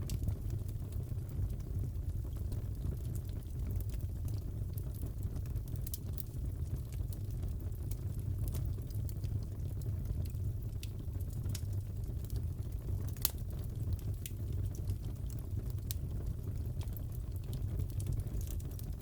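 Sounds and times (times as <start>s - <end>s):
fire rumbling: 0.0s - 19.0s
burning wood popping and snapping: 13.0s - 19.0s.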